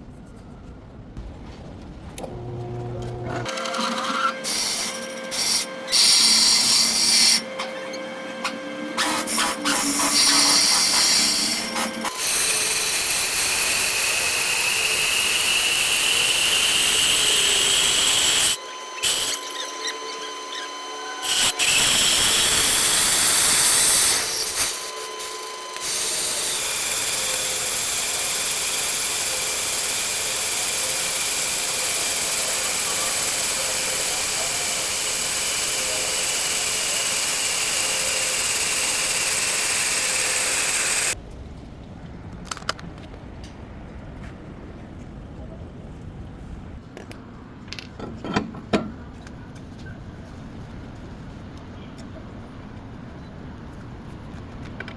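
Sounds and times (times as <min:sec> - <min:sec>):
power tool spinning up: 0:02.2 - 0:41.2.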